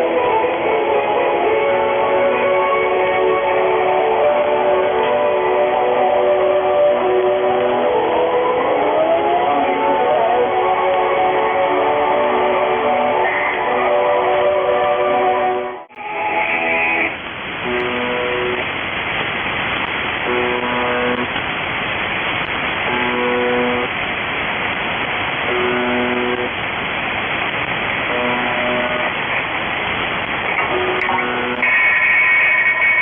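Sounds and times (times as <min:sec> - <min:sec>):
heavy radio static: 0:30.2 - 0:33.0.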